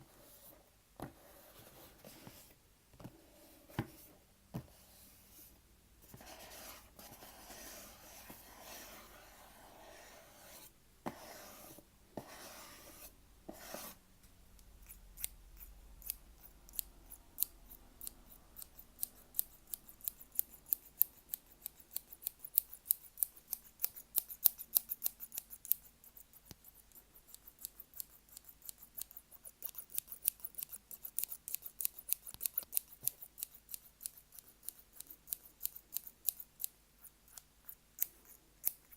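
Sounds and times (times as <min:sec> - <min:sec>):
rubbing and scratching: 0:03.4 - 0:14.0.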